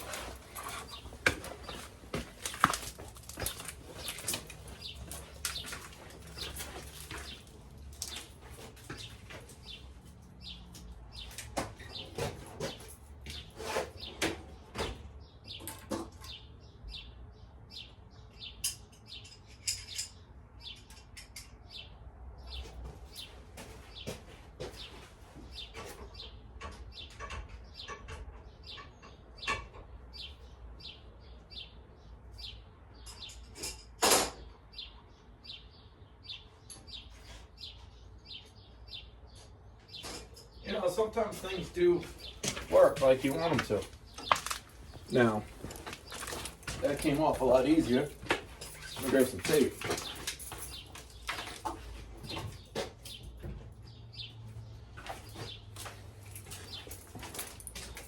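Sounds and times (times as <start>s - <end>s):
hand tools clicking and tapping: 0.0s - 9.8s, 18.6s - 21.7s, 42.0s - 53.6s
birds chirping: 0.0s - 58.0s.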